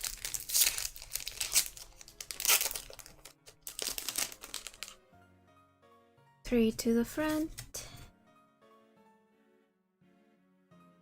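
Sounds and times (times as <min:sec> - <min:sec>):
plastic wrapper crinkling and tearing: 0:00.0 - 0:05.0
faint background music: 0:00.0 - 0:11.0.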